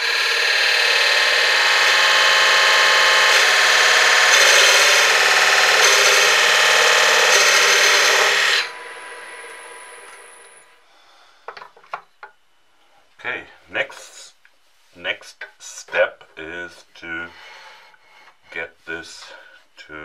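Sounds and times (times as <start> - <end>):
turning tool cutting wood: 0.0 - 10.6
lathe humming: 0.0 - 10.7.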